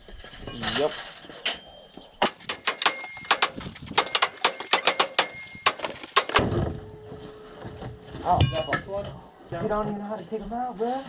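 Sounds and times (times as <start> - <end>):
hand tools clicking on metal: 2.2 - 6.4.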